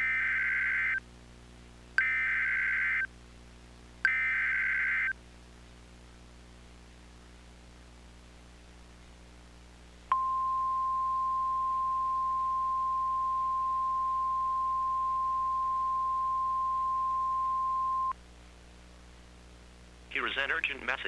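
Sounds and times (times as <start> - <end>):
steady high alarm tone: 4.1 - 5.1, 10.1 - 18.1.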